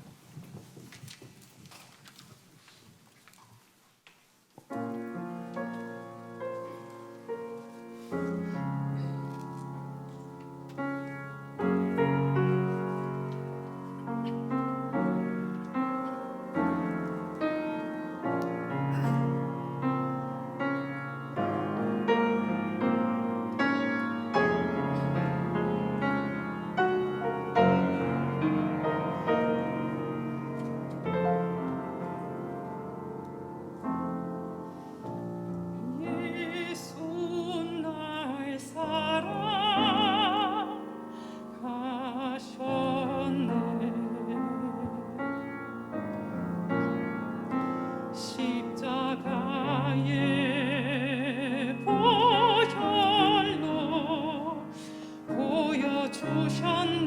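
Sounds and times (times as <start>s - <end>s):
piano hymn accompaniment: 4.6s - 57.0s
singing with wide vibrato: 35.8s - 45.4s, 48.2s - 57.0s.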